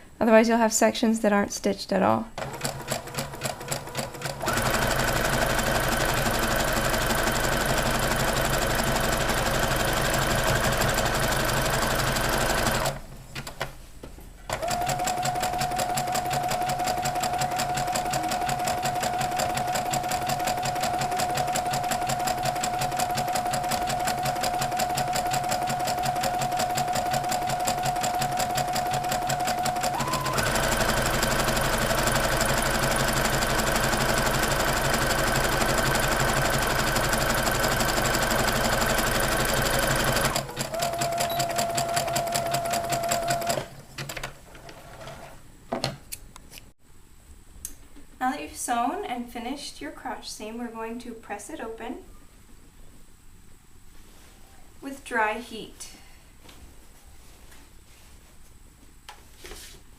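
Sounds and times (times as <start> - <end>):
sewing machine stitching: 2.4 - 13.6, 14.5 - 45.3.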